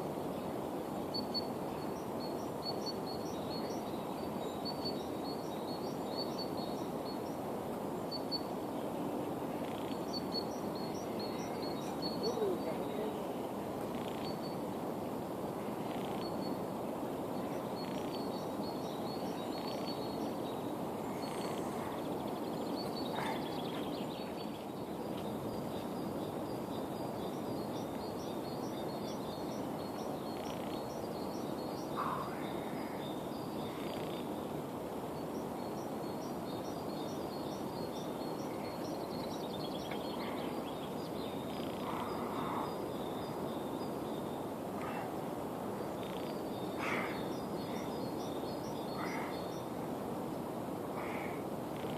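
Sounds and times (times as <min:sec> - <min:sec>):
small birds chirping: 0:00.0 - 0:51.9
low bird calls: 0:09.4 - 0:14.7, 0:17.4 - 0:34.5, 0:35.6 - 0:49.8, 0:50.9 - 0:51.9.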